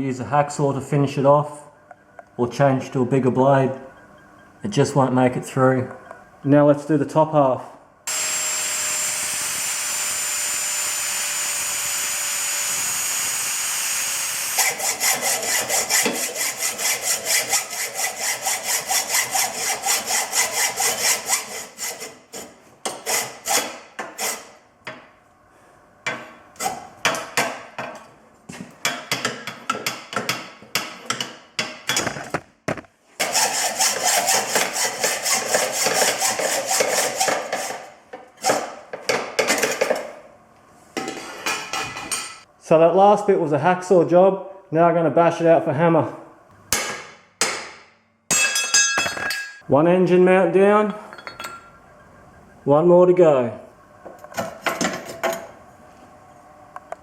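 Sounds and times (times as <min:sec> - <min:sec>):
angle grinder cutting metal: 0:08.1 - 0:22.1
hacksaw sawing metal: 0:08.1 - 0:24.5, 0:33.2 - 0:38.8.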